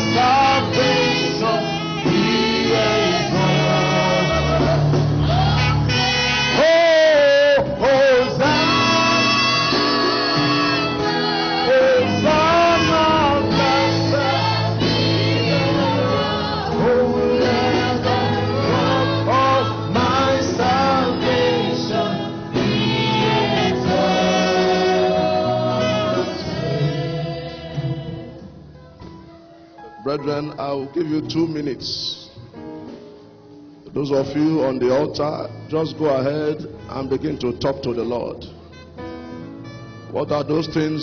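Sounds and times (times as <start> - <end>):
choir singing gospel song: 0.0 - 28.7
instrumental backing: 0.0 - 41.0.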